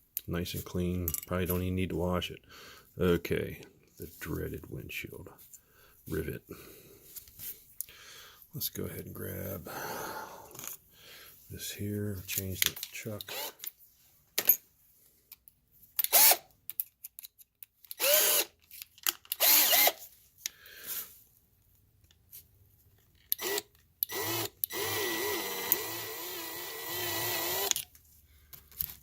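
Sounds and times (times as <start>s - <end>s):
power drill drilling metal: 13.3s - 13.6s, 16.1s - 16.4s, 18.0s - 18.5s, 19.4s - 20.0s, 23.4s - 27.8s.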